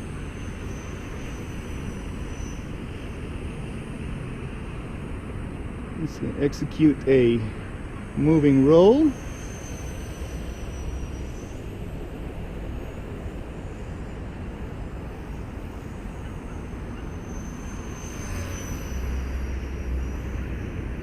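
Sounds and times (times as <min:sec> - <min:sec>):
helicopter rotor hiss: 0:00.0 - 0:21.0
high motor whine: 0:00.0 - 0:21.0.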